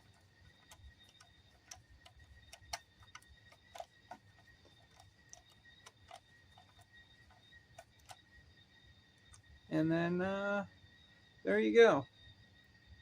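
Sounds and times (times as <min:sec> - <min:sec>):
plastic parts clicking: 0:00.0 - 0:08.3
faint high whine: 0:00.0 - 0:13.0.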